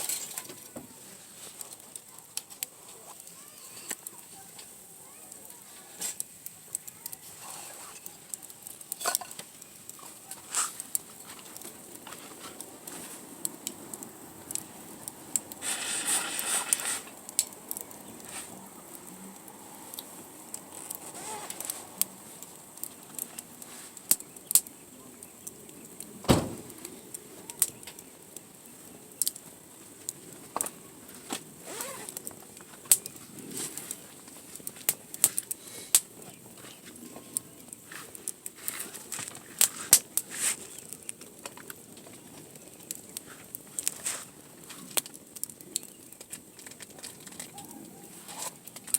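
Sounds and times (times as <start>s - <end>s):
campfire crackling and popping: 0.0s - 48.9s
thump: 26.2s - 26.7s.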